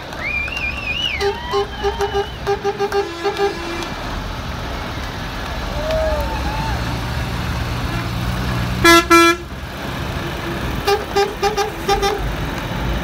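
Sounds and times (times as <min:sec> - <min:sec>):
diesel engines rumbling: 0:00.0 - 0:13.0
fire engine horn blasts: 0:00.6 - 0:04.0, 0:07.8 - 0:09.5, 0:10.8 - 0:12.3
short honks: 0:08.8 - 0:09.4, 0:10.9 - 0:12.2.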